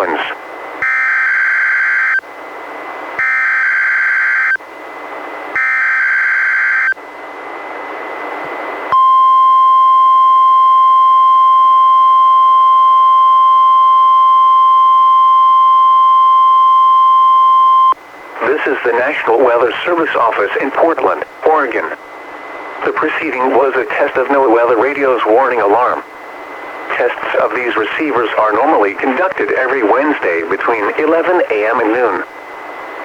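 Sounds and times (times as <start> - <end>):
radio hiss: 0.0 - 0.5, 18.3 - 22.1, 22.7 - 33.0
steady warning alarm tone: 0.8 - 2.4, 3.2 - 4.7, 5.5 - 7.0, 8.9 - 18.6.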